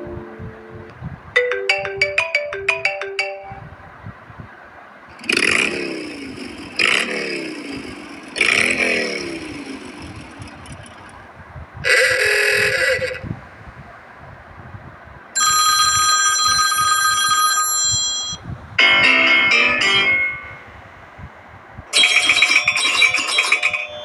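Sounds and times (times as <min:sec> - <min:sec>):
short plucked ringtone notes: 0:00.0 - 0:03.8, 0:15.4 - 0:20.6.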